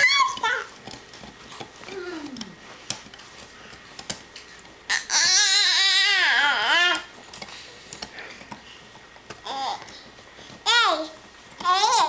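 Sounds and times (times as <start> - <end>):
toddler wailing: 4.9 - 7.1.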